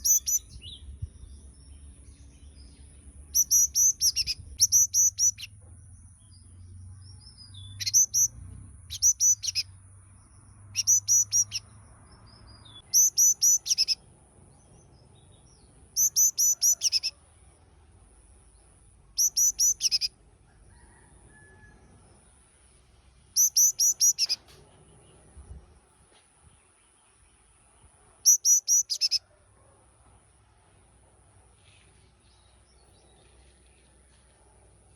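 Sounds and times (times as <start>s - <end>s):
bird singing high ringing notes: 0.0s - 0.6s, 3.4s - 5.5s, 8.9s - 9.7s, 10.8s - 11.6s, 12.8s - 14.0s, 16.0s - 17.1s, 19.2s - 20.1s, 23.4s - 24.4s, 28.3s - 29.2s.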